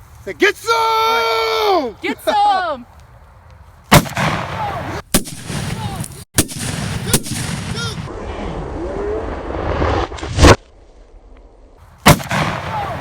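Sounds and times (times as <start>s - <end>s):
shotgun shots: 3.9s - 8.1s, 12.0s - 13.0s.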